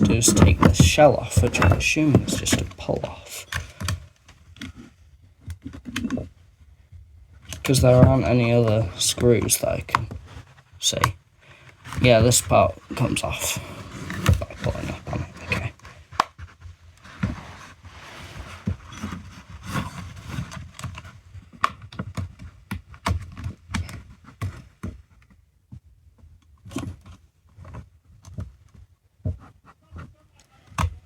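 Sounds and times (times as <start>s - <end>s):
casing parts clicking and knocking: 0.0s - 6.3s, 7.4s - 16.4s
plastic casing scraping: 0.0s - 6.8s, 7.4s - 25.3s.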